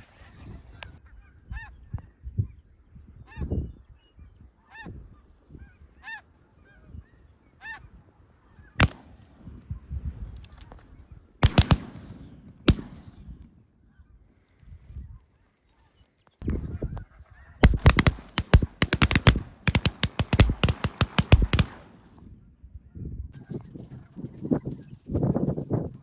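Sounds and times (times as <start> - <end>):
geese honking: 4.6 - 8.8
sharp loud bangs: 11.4 - 13.4, 17.6 - 22.0.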